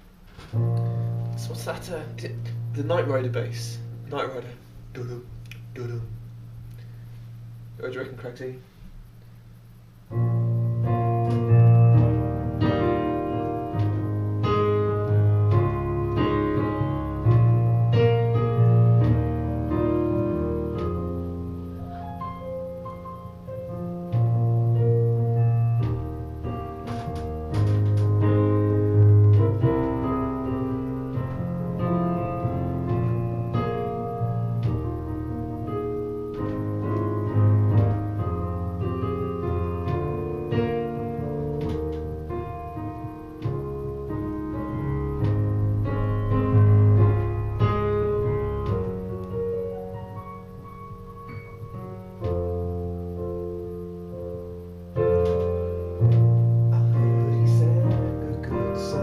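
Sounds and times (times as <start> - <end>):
piano chords: 0.0 - 59.0.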